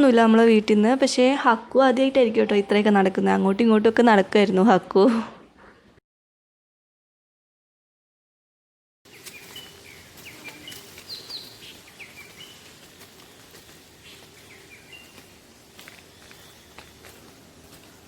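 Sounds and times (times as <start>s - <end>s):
small birds chirping: 9.1s - 18.0s.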